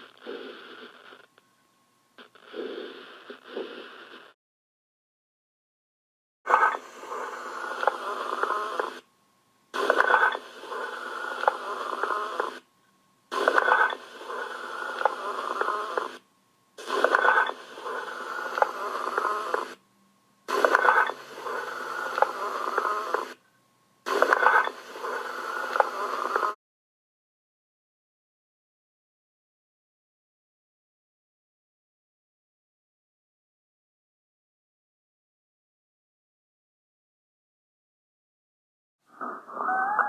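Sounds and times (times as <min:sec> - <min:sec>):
lung breath sounds: 0:00.0 - 0:01.1, 0:02.4 - 0:04.3.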